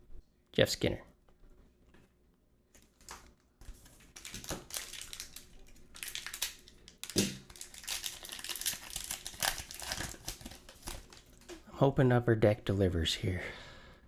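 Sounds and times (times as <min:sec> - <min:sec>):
foil wrapper crinkling and tearing: 0:02.8 - 0:11.6.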